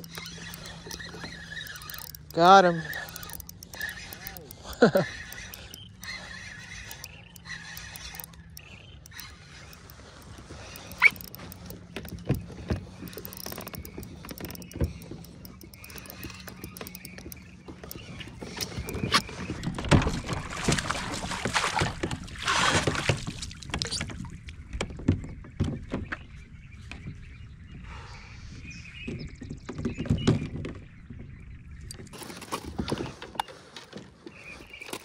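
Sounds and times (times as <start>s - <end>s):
water splashing: 20.0s - 23.8s.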